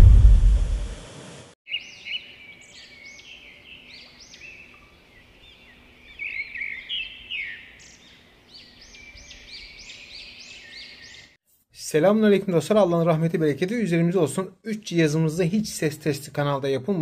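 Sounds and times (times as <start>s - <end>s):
small birds chirping: 1.7s - 11.4s.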